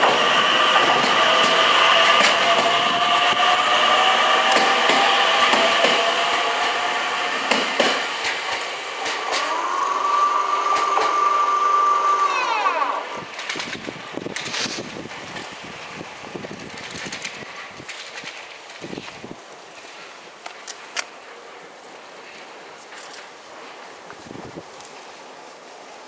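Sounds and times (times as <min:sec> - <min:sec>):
steady whine: 0:00.0 - 0:14.3
train wheels on rails: 0:00.0 - 0:26.0
high-pitched wheel squealing: 0:09.2 - 0:13.3.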